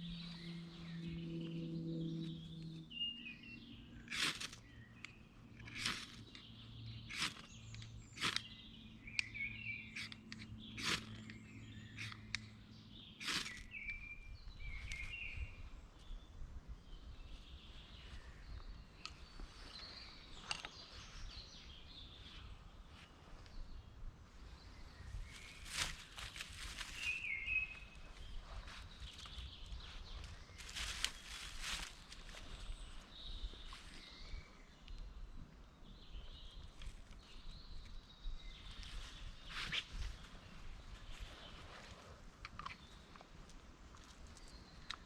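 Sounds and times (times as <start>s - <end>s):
birds chirping: 0.0s - 45.0s.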